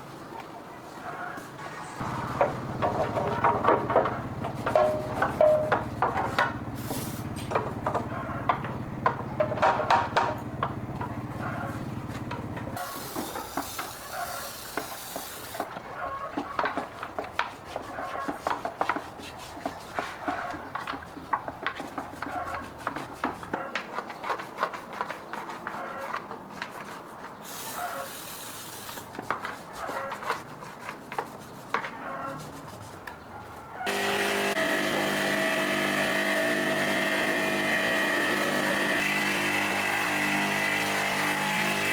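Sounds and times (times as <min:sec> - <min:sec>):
motor running: 0:02.0 - 0:13.6, 0:33.9 - 0:41.9
short hiss bursts: 0:27.4 - 0:29.1.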